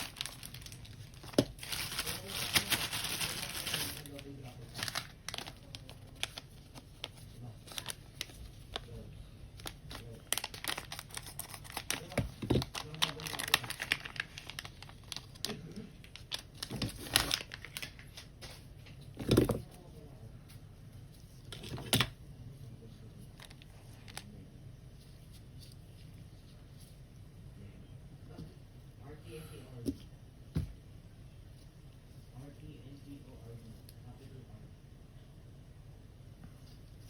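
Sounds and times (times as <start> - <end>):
plastic packaging crinkling: 0.0 - 9.0, 9.6 - 18.4.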